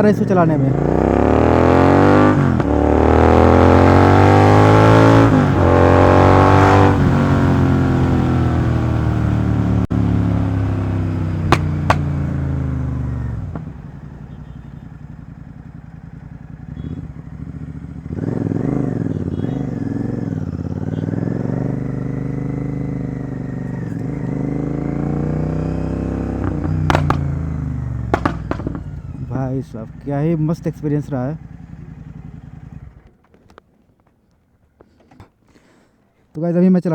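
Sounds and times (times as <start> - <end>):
motorcycle engine revving: 0.0 - 33.2
exhaust pops: 11.0 - 14.2, 26.4 - 29.4.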